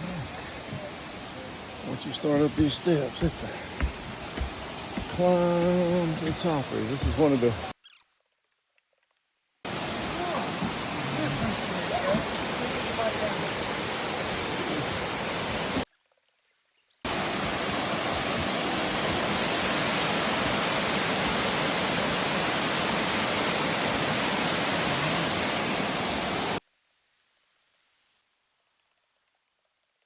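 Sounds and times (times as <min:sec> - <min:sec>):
waterfall rushing: 0:00.0 - 0:07.7, 0:09.7 - 0:15.8, 0:17.1 - 0:26.6.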